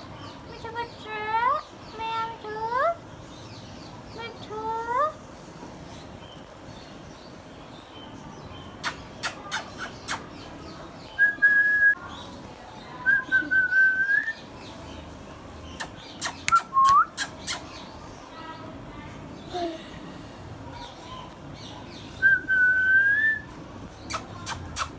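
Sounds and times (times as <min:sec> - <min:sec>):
sharp clicks: 0:16.2 - 0:17.6.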